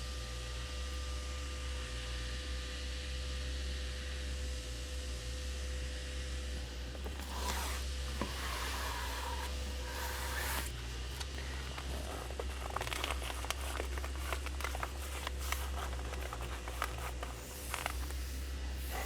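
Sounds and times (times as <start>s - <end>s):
velcro rasping swishes: 6.8s - 19.0s.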